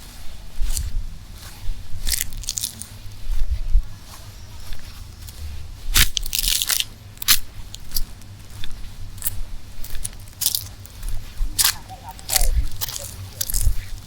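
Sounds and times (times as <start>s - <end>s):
footsteps crunching on dry leaves: 0.0s - 14.0s
low rumble: 8.6s - 14.0s.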